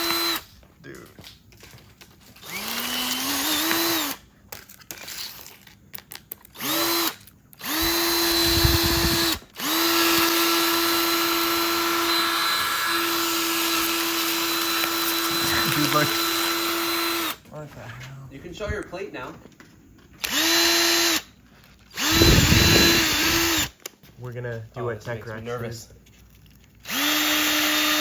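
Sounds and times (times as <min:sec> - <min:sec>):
cordless drill whining: 0:00.0 - 0:00.5, 0:02.4 - 0:04.2, 0:06.5 - 0:17.4, 0:20.2 - 0:23.8, 0:26.8 - 0:28.0
drill bit grinding: 0:00.0 - 0:00.5, 0:02.4 - 0:04.2, 0:06.6 - 0:17.4, 0:20.2 - 0:21.3, 0:21.9 - 0:23.8, 0:26.8 - 0:28.0.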